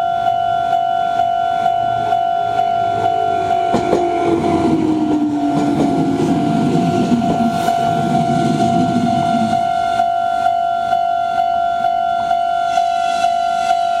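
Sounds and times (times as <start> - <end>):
level crossing warning bell: 0.0 - 14.0
train motor whine: 0.0 - 14.0
train wheels clacking: 1.6 - 10.1.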